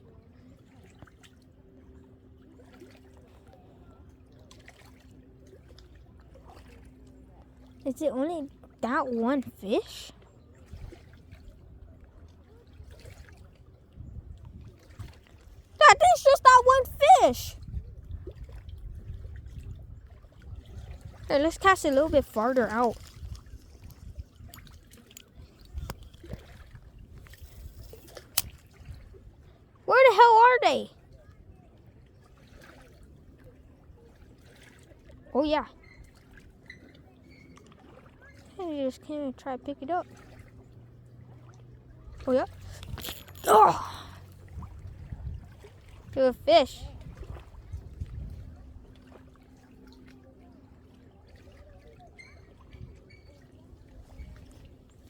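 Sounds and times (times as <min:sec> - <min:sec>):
trickling water: 0:00.0 - 0:55.0
wind rumble on microphone: 0:12.8 - 0:15.8, 0:17.5 - 0:29.4, 0:44.3 - 0:49.0, 0:52.6 - 0:54.7.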